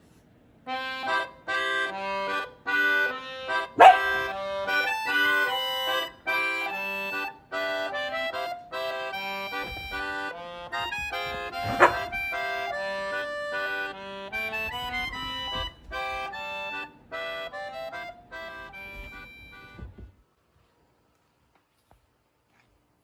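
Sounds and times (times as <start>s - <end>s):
accordion-like melody: 0.7s - 20.2s.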